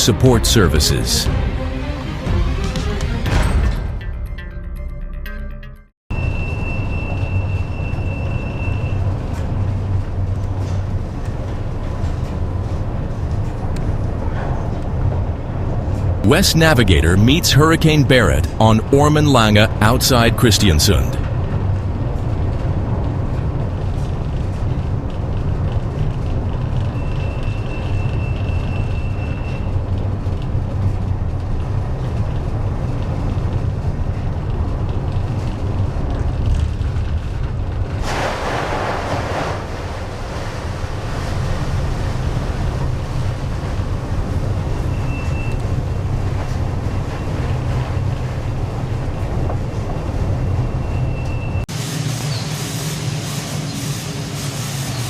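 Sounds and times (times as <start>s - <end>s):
storm wind and sea rumble: 6.3s - 19.9s, 20.9s - 51.7s
wave rushing hiss: 38.0s - 42.5s.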